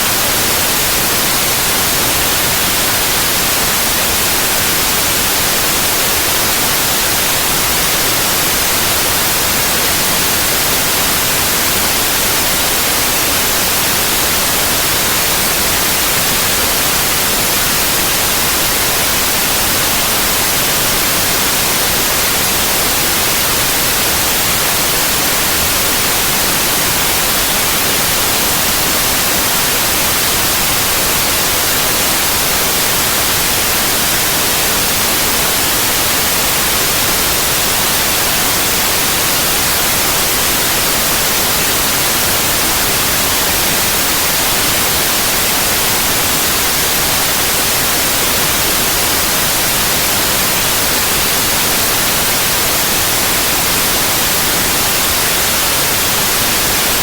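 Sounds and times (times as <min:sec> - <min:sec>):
white noise hiss: 0:00.0 - 0:57.0.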